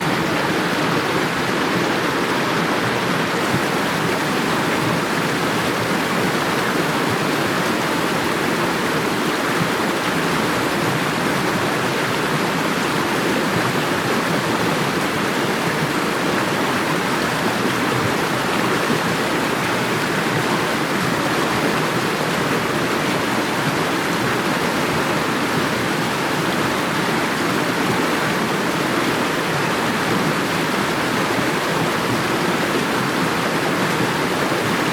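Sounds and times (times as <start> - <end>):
rushing water: 0.0 - 34.9.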